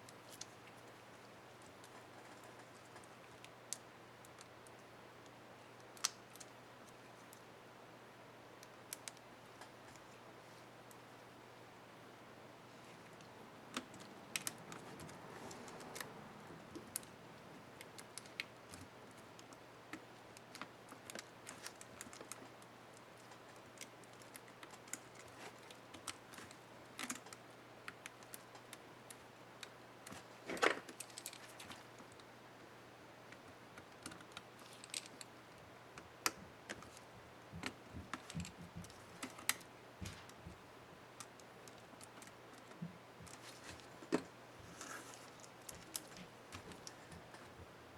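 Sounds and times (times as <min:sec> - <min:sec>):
small plastic keyboard clicks: 0:33.3 - 0:35.3, 0:37.6 - 0:40.5.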